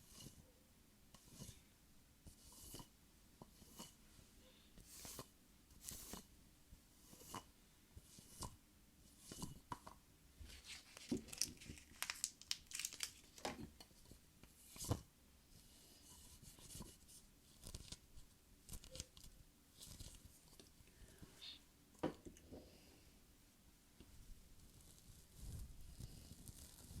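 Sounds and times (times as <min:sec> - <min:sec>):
thin material tearing and crinkling: 0:10.6 - 0:13.5.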